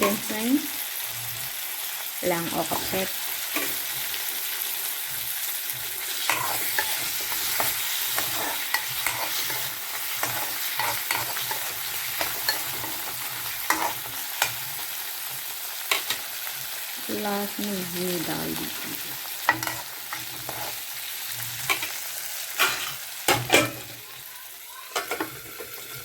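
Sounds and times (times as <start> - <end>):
food sizzling in oil: 0.0 - 26.0
spatula scraping pan: 2.6 - 4.6, 6.0 - 14.9, 19.4 - 24.0, 24.9 - 26.0.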